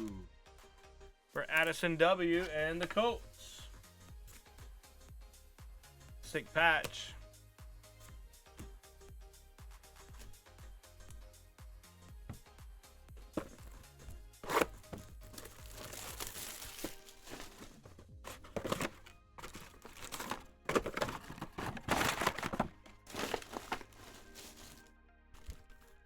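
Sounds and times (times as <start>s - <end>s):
background music: 0.0s - 26.0s
cards being handled: 13.2s - 26.0s
card pack wrappers crinkling: 14.4s - 26.0s.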